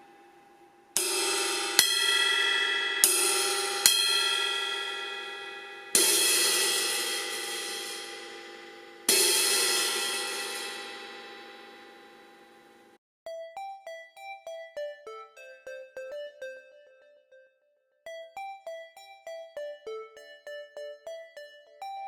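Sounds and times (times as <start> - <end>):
crash cymbal struck and ringing: 1.0 - 13.0.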